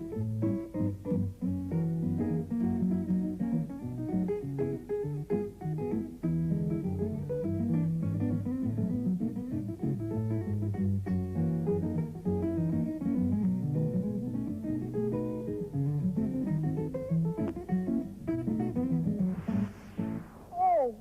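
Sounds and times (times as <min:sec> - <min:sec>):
guitar music with bass line: 0:00.0 - 0:19.4.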